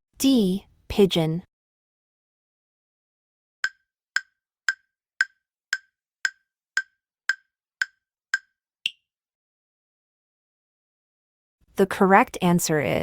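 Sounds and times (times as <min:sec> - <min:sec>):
countdown timer ticks: 0:03.6 - 0:09.0
higher-pitched tick: 0:03.6 - 0:09.0.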